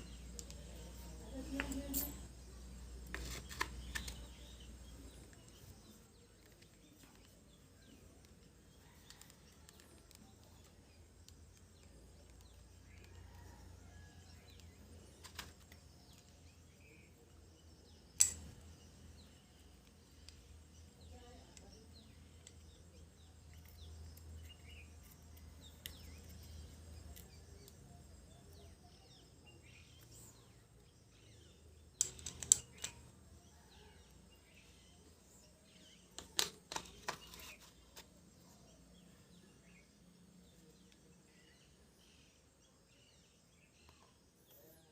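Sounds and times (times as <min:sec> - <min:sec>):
faint low hum: 0:00.0 - 0:44.9
sharp clicks and taps: 0:32.0 - 0:33.1.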